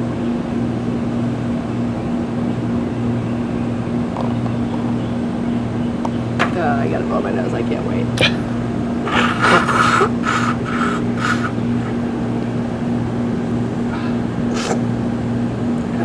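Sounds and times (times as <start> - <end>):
person blowing nose: 9.1 - 11.5, 14.5 - 14.8.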